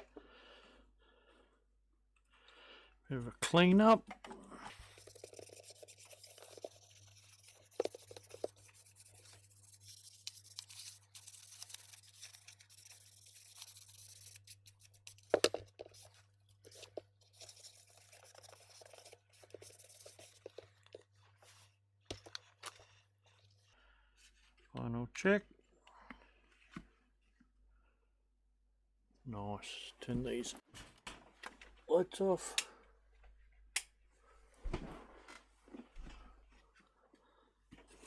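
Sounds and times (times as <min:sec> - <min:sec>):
scratchy rubbing on plastic: 0:04.7 - 0:22.9.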